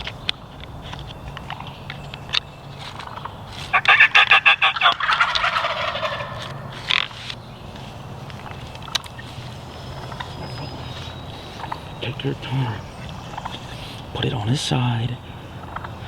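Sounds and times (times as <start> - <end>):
turkey gobbling: 2.9 - 7.1, 8.4 - 16.0.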